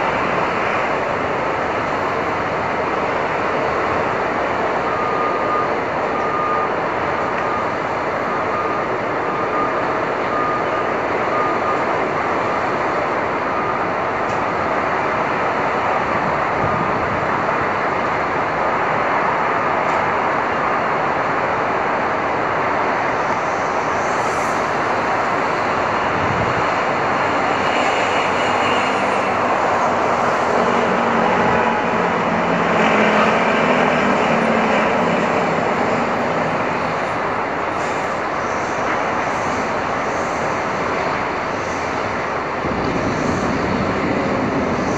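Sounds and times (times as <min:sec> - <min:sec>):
heavy truck engine: 0:00.0 - 0:44.9
street traffic noise: 0:00.0 - 0:44.9
reversing beeper: 0:03.3 - 0:14.9.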